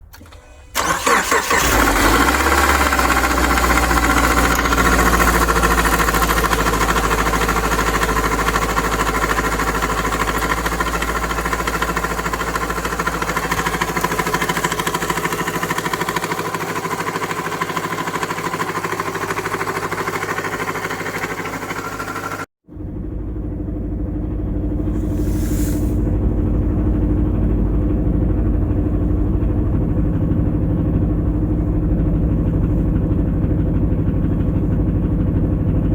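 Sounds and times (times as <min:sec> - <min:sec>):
engine cranking and catching: 0:00.0 - 0:22.5, 0:25.9 - 0:35.9
engine idling with a knock: 0:26.0 - 0:35.9.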